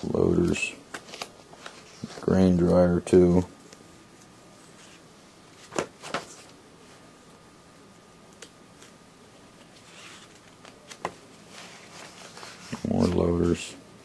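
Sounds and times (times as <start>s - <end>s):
paper pages turning: 0.4s - 2.7s, 9.6s - 13.6s.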